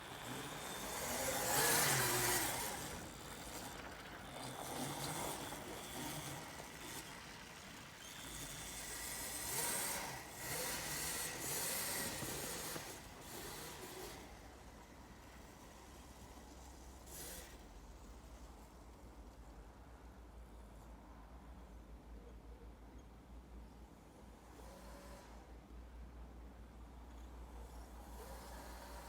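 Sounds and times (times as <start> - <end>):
electric motor whine: 0.0 - 14.3.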